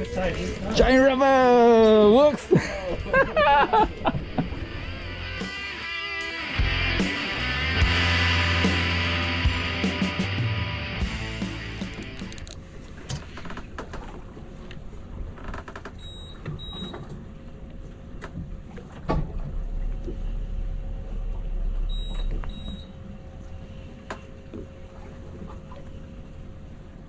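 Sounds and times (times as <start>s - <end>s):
low rumble and hum: 2.6s - 5.5s, 6.6s - 13.0s, 17.3s - 27.0s.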